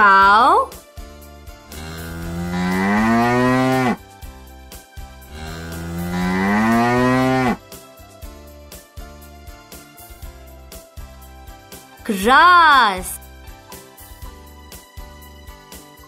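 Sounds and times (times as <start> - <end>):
cow mooing: 1.7 - 4.0, 5.3 - 7.6.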